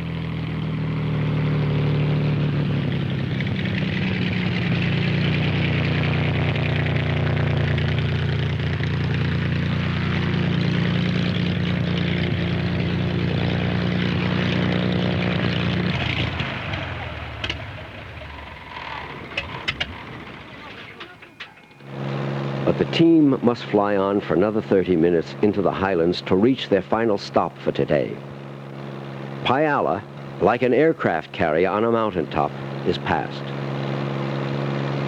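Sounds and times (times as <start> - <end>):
propeller plane engine: 0.0 - 35.0.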